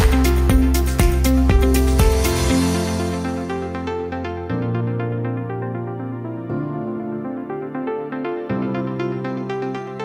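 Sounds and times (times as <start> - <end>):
electronic music synth chords: 0.0 - 10.0.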